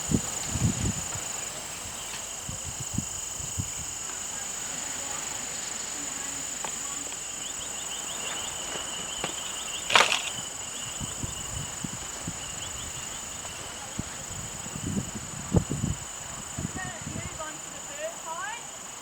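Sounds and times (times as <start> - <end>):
high-pitched insect chorus: 0.0 - 19.0
rapid chirping: 7.2 - 14.2.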